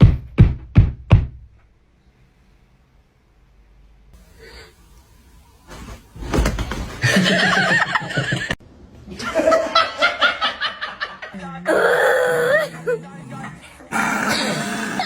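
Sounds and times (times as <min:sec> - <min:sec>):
people laughing: 0:07.0 - 0:11.4.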